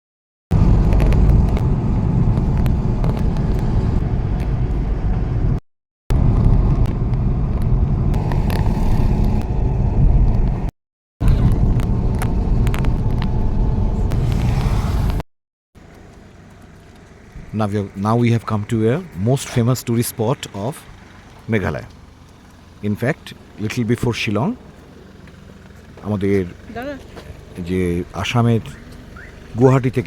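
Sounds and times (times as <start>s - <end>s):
car driving rumble: 0.5s - 15.2s, 15.8s - 30.0s.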